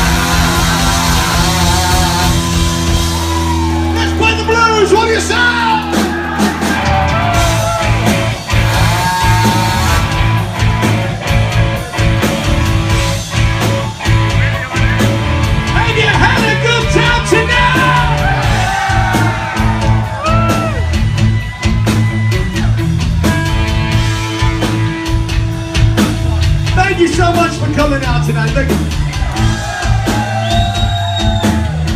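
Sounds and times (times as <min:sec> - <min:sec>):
singer yelling: 0:00.0 - 0:08.1, 0:15.7 - 0:20.9
live hard rock band playing: 0:00.0 - 0:31.9.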